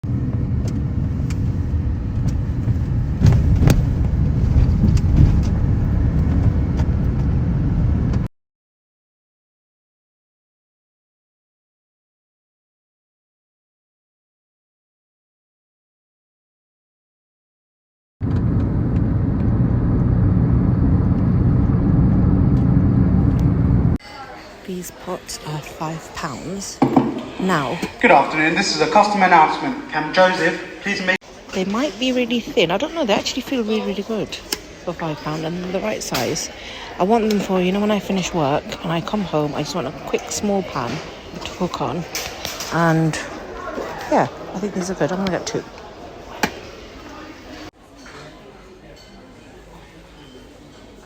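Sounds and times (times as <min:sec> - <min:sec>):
vehicle engine rumbling: 0:00.0 - 0:08.3, 0:18.2 - 0:24.0.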